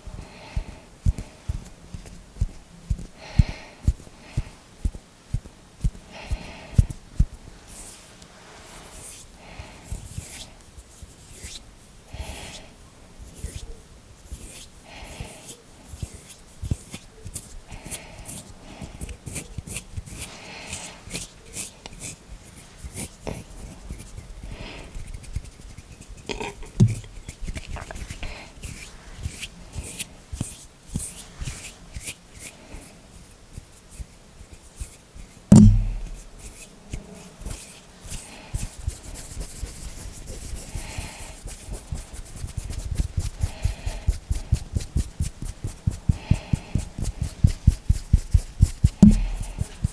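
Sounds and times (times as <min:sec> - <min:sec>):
crackly hand rubs and taps: 0:01.1 - 0:03.2, 0:03.9 - 0:06.1, 0:15.9 - 0:17.6, 0:25.0 - 0:32.5, 0:33.5 - 0:40.6, 0:41.4 - 0:49.9
heavy thump: 0:26.8 - 0:27.2, 0:35.5 - 0:36.4, 0:49.0 - 0:49.7.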